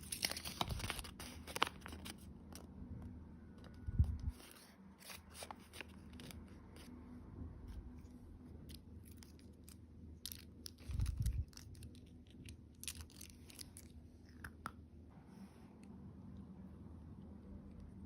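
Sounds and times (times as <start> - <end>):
packaging crackling and rustling: 0.0 - 2.7, 3.6 - 6.9, 8.6 - 14.0.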